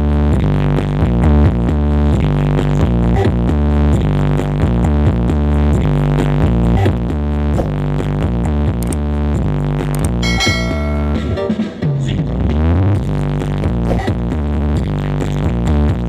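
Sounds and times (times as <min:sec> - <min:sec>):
bright high synth tone: 0:10.2 - 0:11.5.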